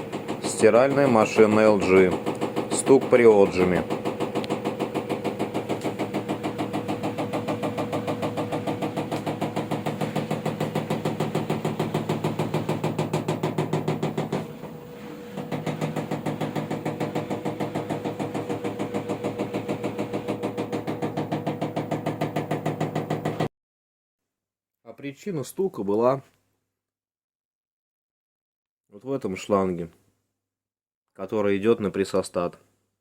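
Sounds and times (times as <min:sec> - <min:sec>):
hose knocking against housing: 0:00.0 - 0:23.5
washing machine drum hum: 0:00.0 - 0:23.5.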